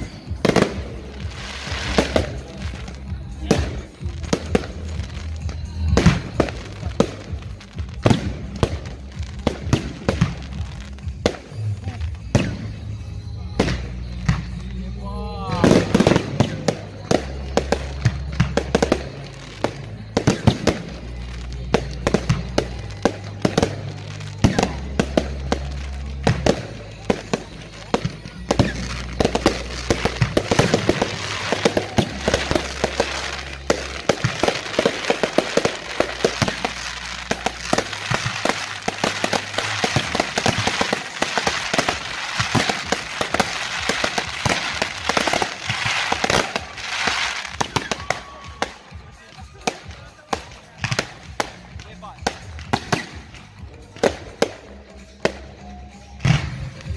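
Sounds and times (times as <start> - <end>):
fireworks bangs: 0.0 - 14.9, 15.5 - 56.9
firework crackling: 0.0 - 56.9
music with bass line: 0.1 - 56.9.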